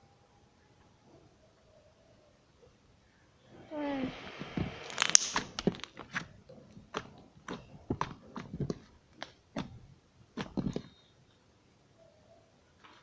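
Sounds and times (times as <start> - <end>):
slime stretched by hand: 4.4 - 11.0
slime air bubbles popping: 4.6 - 6.2.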